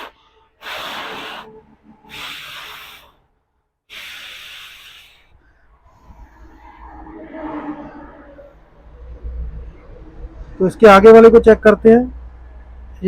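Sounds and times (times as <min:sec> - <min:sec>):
person exhaling hard: 0:00.0 - 0:03.3, 0:03.9 - 0:05.5.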